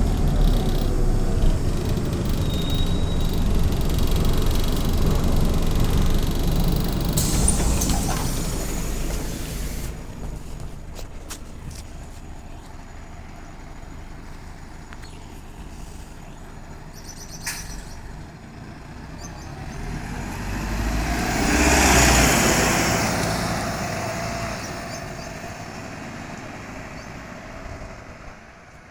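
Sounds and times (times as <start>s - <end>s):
vehicle passing: 18.6s - 28.4s.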